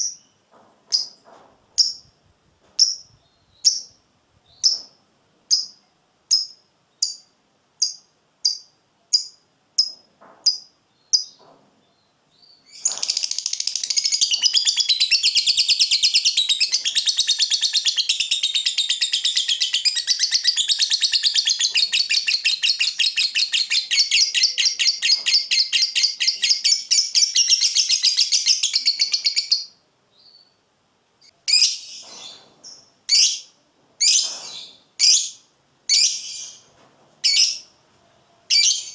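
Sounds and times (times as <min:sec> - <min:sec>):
lovebird sharp chirps: 0:02.8 - 0:04.9, 0:05.5 - 0:11.4, 0:12.7 - 0:30.4, 0:38.5 - 0:38.9
lovebird rapid chattering trill: 0:12.8 - 0:26.3.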